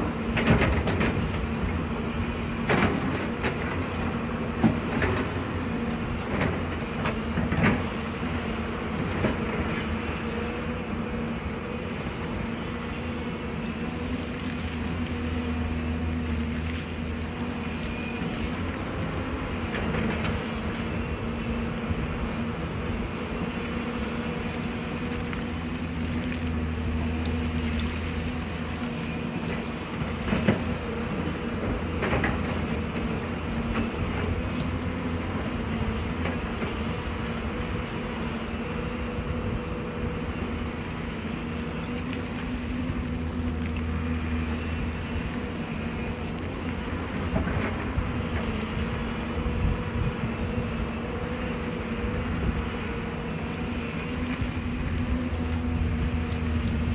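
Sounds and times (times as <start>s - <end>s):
diesel engine running: 0.0s - 56.9s.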